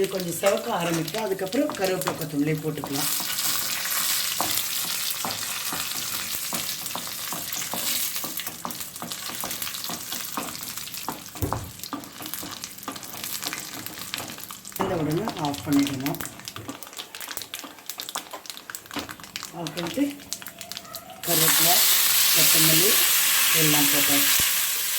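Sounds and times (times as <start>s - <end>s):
seeds sizzling in hot oil: 0.0s - 14.8s, 15.8s - 24.9s
oil popping and crackling: 0.0s - 24.9s.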